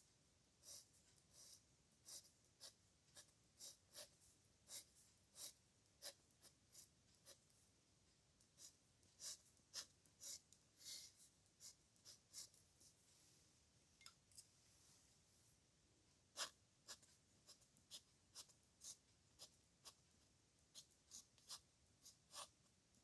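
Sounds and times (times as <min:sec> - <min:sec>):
pen scratching on paper: 0:00.6 - 0:07.5, 0:08.5 - 0:12.7, 0:16.3 - 0:20.0, 0:20.7 - 0:22.6.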